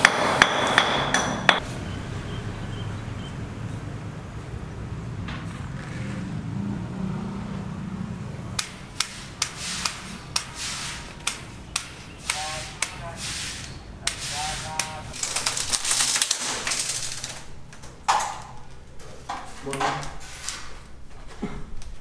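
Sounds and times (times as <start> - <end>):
sharp taps: 8.6 - 15.1
hissing noise: 8.6 - 15.3.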